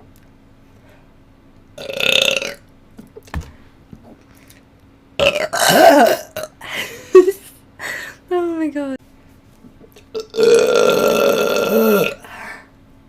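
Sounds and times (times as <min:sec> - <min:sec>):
person burping: 0:01.8 - 0:02.6, 0:05.2 - 0:06.6, 0:10.1 - 0:12.3.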